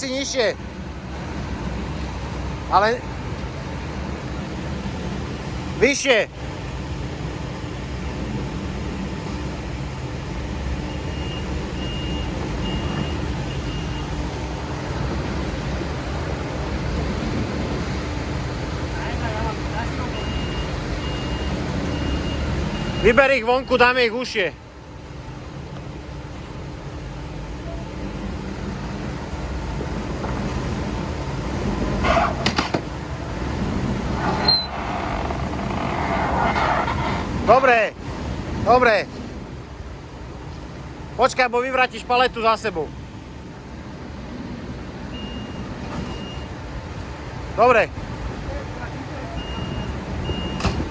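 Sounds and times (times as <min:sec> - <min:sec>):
diesel engine running: 0:06.4 - 0:41.2
reversing alarm beeps: 0:10.9 - 0:14.2, 0:20.1 - 0:24.0, 0:45.2 - 0:46.5, 0:49.4 - 0:50.8.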